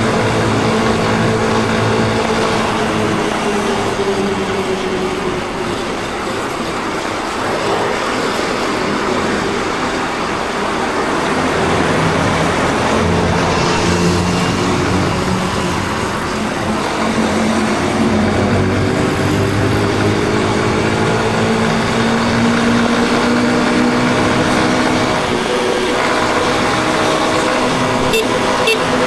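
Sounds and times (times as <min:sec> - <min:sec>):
wind and road noise: 0:00.0 - 0:29.0
motorcycle engine running: 0:10.6 - 0:29.0.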